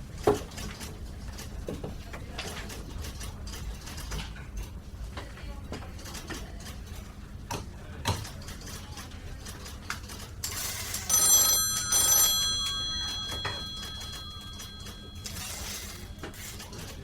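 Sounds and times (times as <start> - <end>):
telephone ringing: 10.5 - 17.0.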